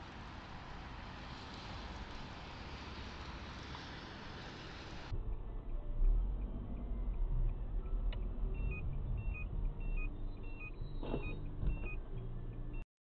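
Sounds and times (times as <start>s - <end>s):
car engine and road rumble: 0.0s - 12.8s
two-note electronic beep: 7.8s - 12.0s.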